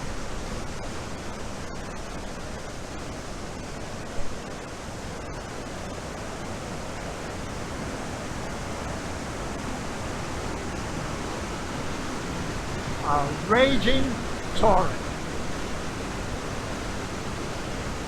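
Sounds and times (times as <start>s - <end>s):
waterfall rushing: 6.1s - 18.0s.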